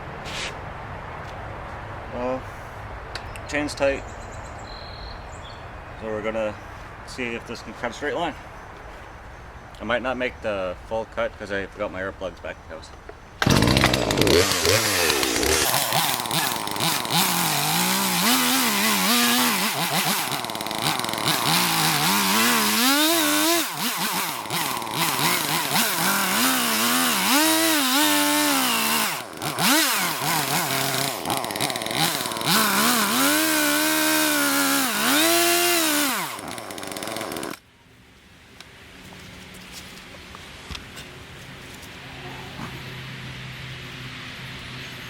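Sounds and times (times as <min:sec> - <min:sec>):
chainsaw cutting log: 0:13.4 - 0:37.6.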